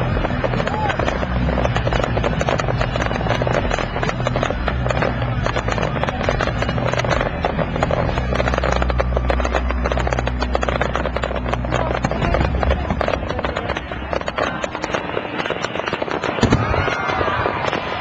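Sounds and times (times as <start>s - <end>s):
crowd chatter: 0.0s - 18.0s
fireworks crackling and popping: 0.0s - 18.0s.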